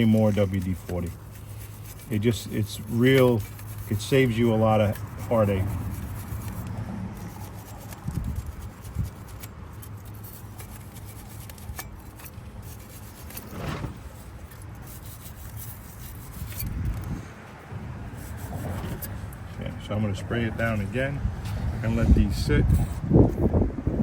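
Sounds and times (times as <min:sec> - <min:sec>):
wire brush scrubbing bolts: 0:00.0 - 0:23.5.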